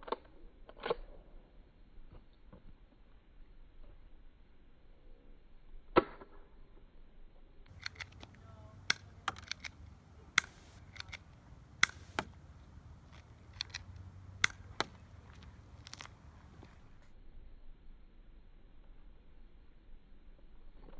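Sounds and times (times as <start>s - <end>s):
airsoft gun shots: 10.4s - 11.2s, 11.8s - 12.4s, 14.4s - 15.1s.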